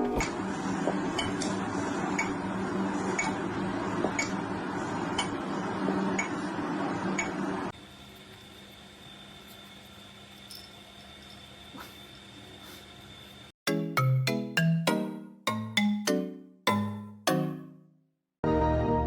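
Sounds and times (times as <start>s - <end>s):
clock ticking: 13.7s - 17.7s.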